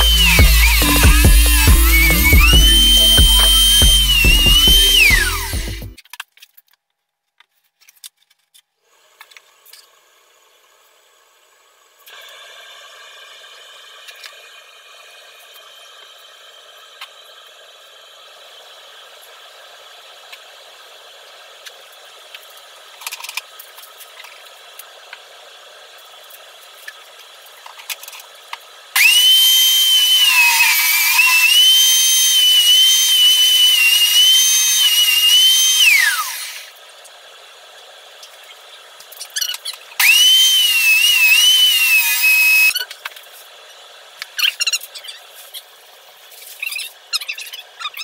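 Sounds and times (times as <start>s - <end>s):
tile cutter motor whining: 0.0s - 6.0s, 29.0s - 36.7s, 39.4s - 42.9s.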